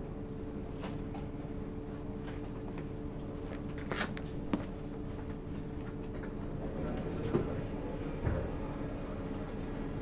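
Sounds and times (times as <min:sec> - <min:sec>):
train electrical hum: 0:00.0 - 0:10.0.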